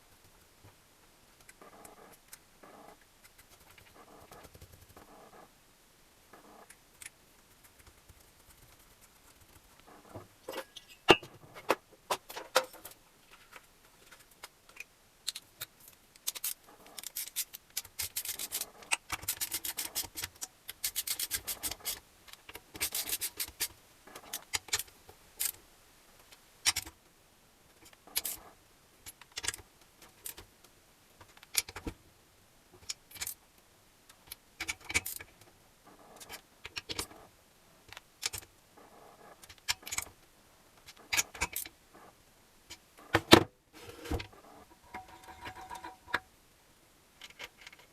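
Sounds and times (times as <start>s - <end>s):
metal tools clinking and scraping: 10.5s - 11.3s, 44.8s - 46.2s.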